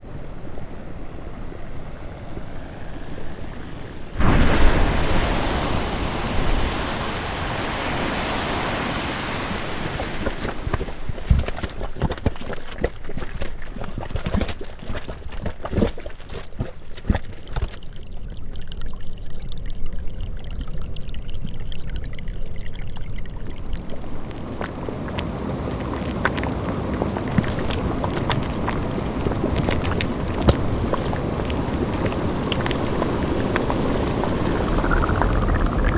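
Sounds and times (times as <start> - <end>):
hot pool bubbling and gurgling: 0.0 - 35.9.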